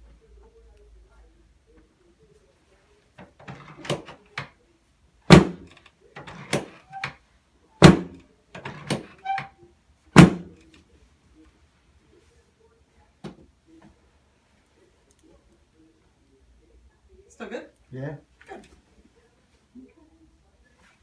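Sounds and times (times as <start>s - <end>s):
adjustment table thunks: 3.2s - 4.5s, 5.3s - 7.1s, 7.8s - 9.5s, 10.2s - 10.6s.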